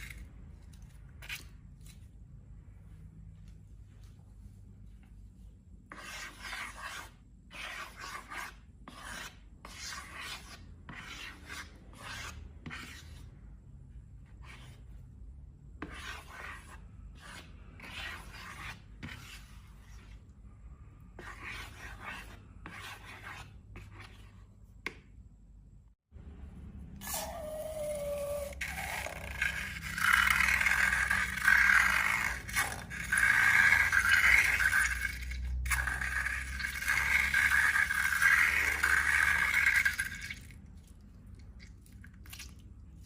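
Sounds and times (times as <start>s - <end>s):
slime scraping: 27.0s - 43.0s.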